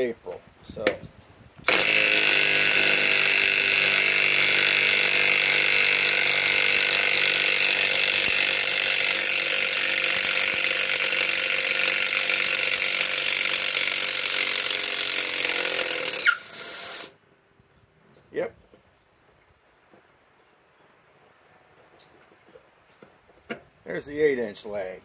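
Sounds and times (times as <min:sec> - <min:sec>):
impact wrench hammering: 0:01.7 - 0:16.4.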